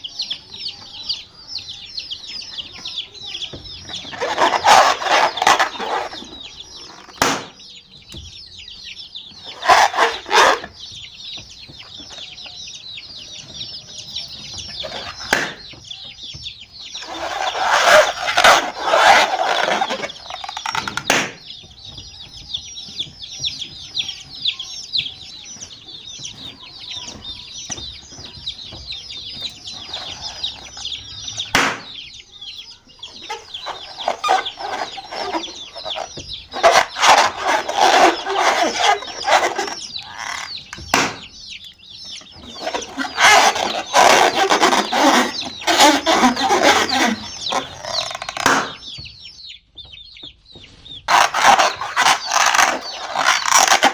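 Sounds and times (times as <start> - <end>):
baby chicks peeping: 0.0 - 53.9
hen clucking: 0.0 - 53.9
sharp knocks: 7.1 - 8.4, 20.6 - 23.9, 31.4 - 32.0, 40.6 - 41.6.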